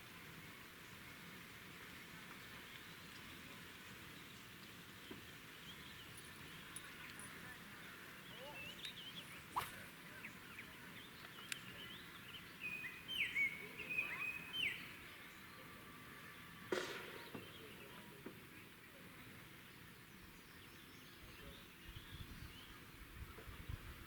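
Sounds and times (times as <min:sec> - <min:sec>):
small birds chirping: 0:02.3 - 0:15.6.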